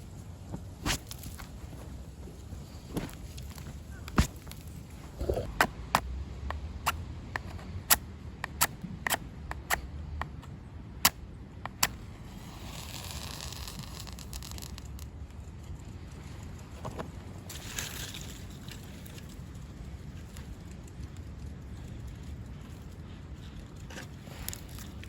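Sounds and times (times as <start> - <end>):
campfire crackling and popping: 11.0 - 15.6.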